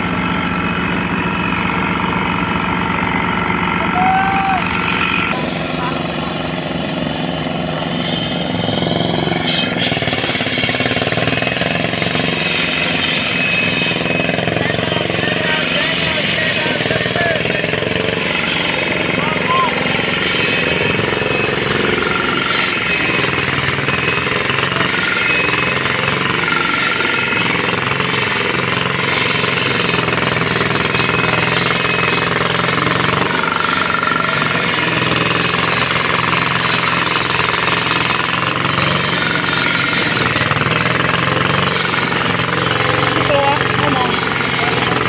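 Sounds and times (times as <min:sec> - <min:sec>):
diesel engine running: 0:00.0 - 0:45.0
pavement breaker hammering: 0:00.0 - 0:45.0.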